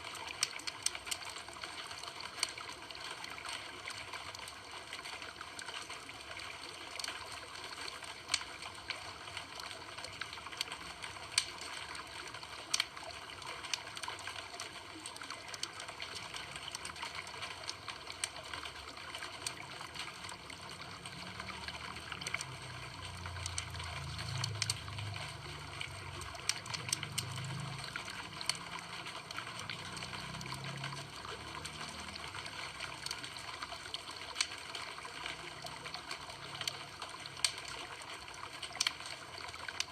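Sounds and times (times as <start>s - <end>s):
campfire crackling: 0.0s - 39.9s
low rumble of flame: 16.4s - 39.9s.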